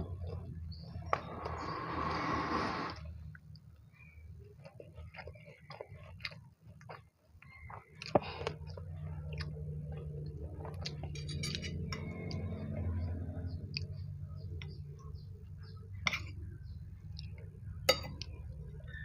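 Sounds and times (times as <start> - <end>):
person chewing food: 4.4 - 15.2.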